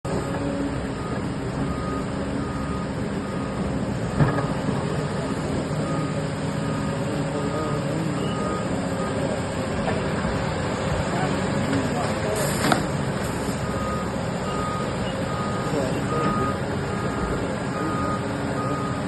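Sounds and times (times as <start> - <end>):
heavy machinery engine running: 0.0 - 19.0
reversing alarm beeping: 0.1 - 9.6, 13.4 - 19.0.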